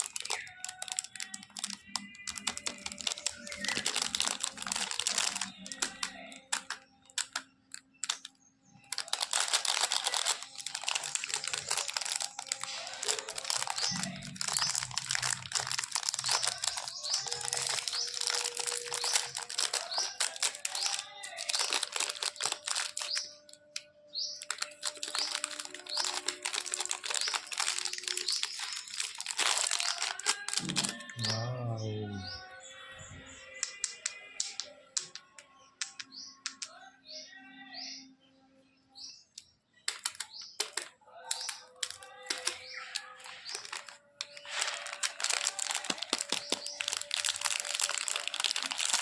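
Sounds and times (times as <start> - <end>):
candy wrappers crinkling: 0.0 - 31.4, 39.8 - 49.0
background music: 0.0 - 36.8.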